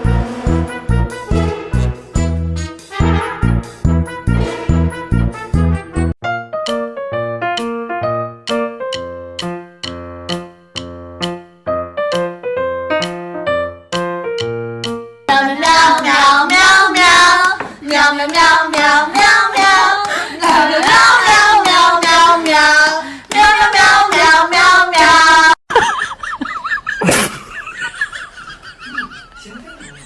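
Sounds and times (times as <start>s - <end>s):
sharp knock: 12.1s - 12.4s.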